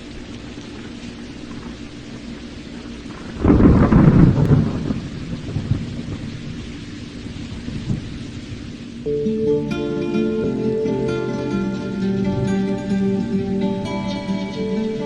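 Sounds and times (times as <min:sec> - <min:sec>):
thunderclap rumbling: 0:00.0 - 0:09.4
rain falling: 0:00.0 - 0:15.0.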